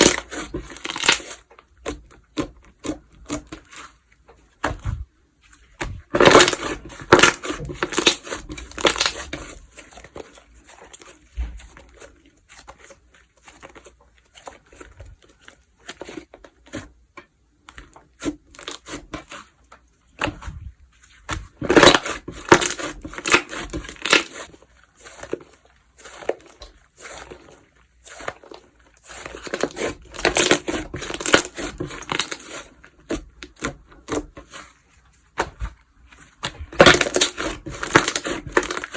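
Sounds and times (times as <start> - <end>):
slime crackling and popping: 0.0 - 3.7, 5.8 - 15.0, 21.4 - 27.4, 28.0 - 34.2, 36.4 - 38.9.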